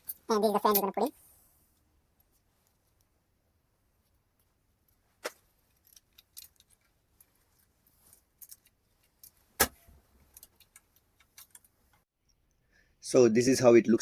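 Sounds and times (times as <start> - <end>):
small metallic clicks and rattles: 4.4 - 12.0.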